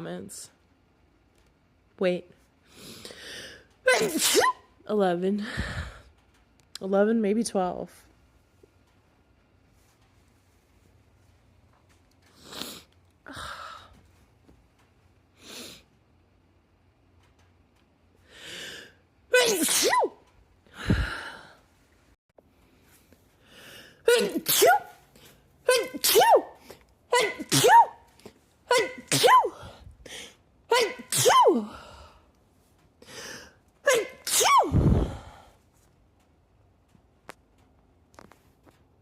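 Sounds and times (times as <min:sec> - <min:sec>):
woman sneezing: 0:03.9 - 0:04.6, 0:19.4 - 0:20.2, 0:24.1 - 0:25.0, 0:25.7 - 0:28.0, 0:28.7 - 0:29.8, 0:30.7 - 0:31.9, 0:33.9 - 0:35.2.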